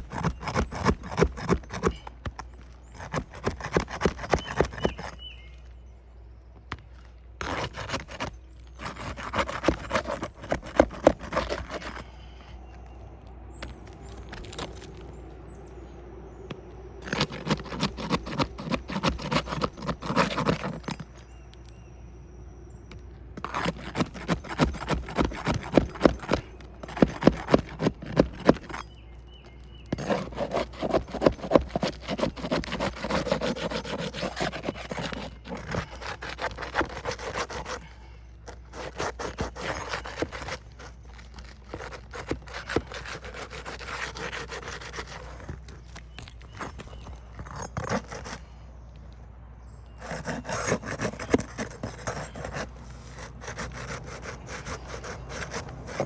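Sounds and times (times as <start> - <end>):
shingle granules rasping: 0.0 - 5.4, 7.0 - 12.6, 13.6 - 15.2, 17.0 - 21.3, 23.4 - 48.6, 50.0 - 56.0
roof tool scraping under shingles: 0.0 - 5.8, 6.7 - 15.5, 16.4 - 21.8, 23.4 - 48.9, 49.7 - 56.0.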